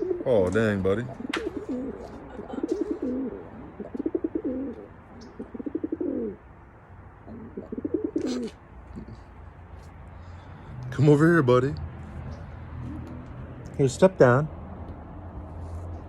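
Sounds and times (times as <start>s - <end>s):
pigeon cooing: 0.0s - 6.5s, 7.2s - 9.4s.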